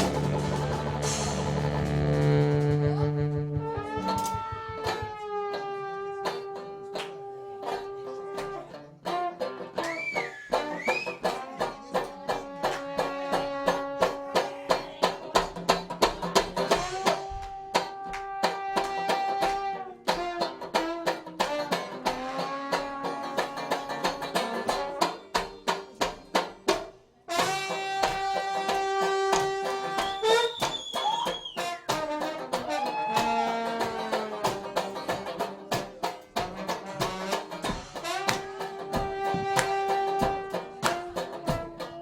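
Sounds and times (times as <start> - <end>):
steady drum beat: 0.0 - 5.5, 13.5 - 19.7, 23.9 - 42.0
brass horns holding long notes: 0.0 - 6.6, 36.8 - 41.3.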